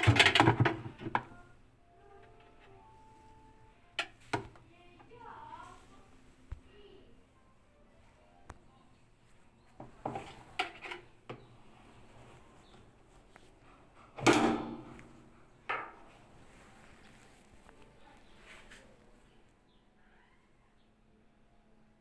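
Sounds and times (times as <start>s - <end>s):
hard objects clunking: 0.0s - 1.4s.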